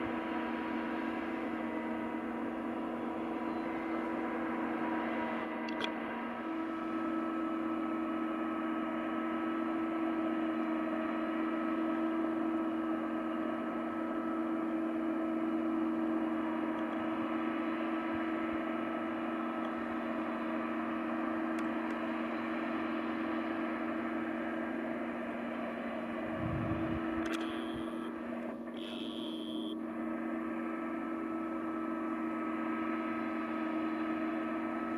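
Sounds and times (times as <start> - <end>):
combine harvester humming: 0.0 - 34.9.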